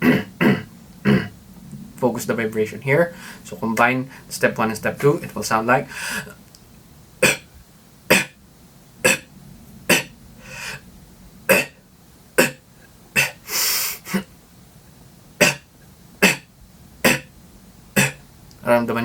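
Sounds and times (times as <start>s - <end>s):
beatbox cough snare: 0.0s - 1.3s, 7.2s - 7.5s, 8.1s - 8.4s, 9.1s - 9.3s, 9.9s - 10.1s, 11.5s - 11.8s, 13.2s - 13.4s, 15.4s - 16.5s, 17.1s - 17.3s, 18.0s - 18.2s
breathy hisses: 3.1s - 4.4s, 5.8s - 6.4s, 9.9s - 10.9s, 13.2s - 14.3s.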